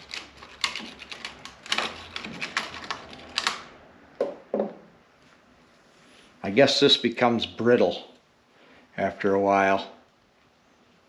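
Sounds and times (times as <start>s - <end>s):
small hard parts clicking and clattering: 0.0s - 3.6s.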